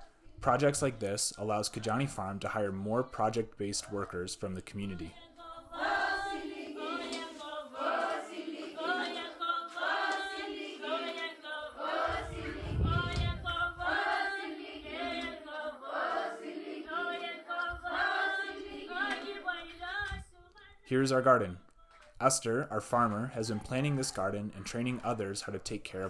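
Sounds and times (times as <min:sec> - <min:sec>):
choir singing: 0:05.1 - 0:20.1.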